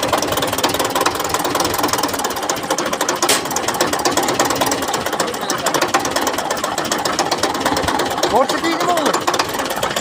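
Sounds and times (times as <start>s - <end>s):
tractor diesel engine clattering: 0.0s - 10.0s
sharp click: 3.2s - 3.5s.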